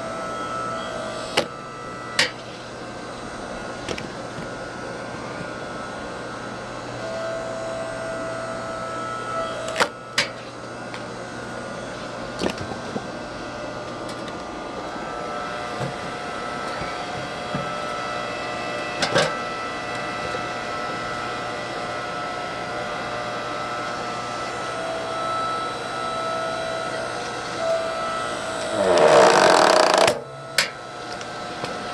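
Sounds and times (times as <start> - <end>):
log splitter motor humming: 0.0 - 31.9.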